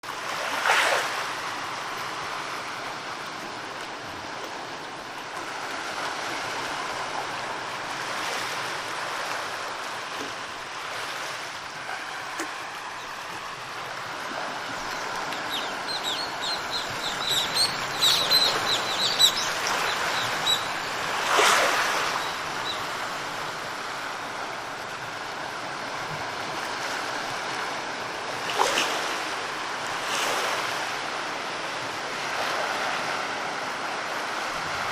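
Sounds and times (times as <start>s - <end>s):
sea surf washing on shore: 0.0s - 34.9s
bird chirping: 14.8s - 21.0s, 22.0s - 22.8s.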